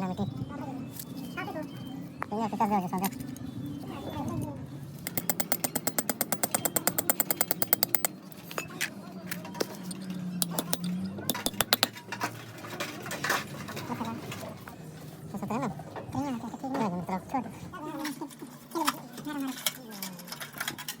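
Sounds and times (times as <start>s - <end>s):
metal knocks: 5.1s - 8.1s, 10.4s - 12.0s
power tool hammering on metal: 5.1s - 8.2s, 10.4s - 12.0s.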